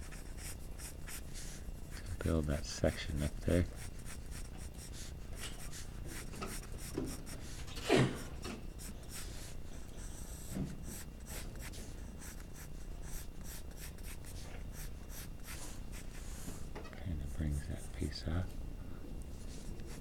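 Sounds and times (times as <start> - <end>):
pencil scratching on paper: 0.0 - 7.8, 8.8 - 16.5.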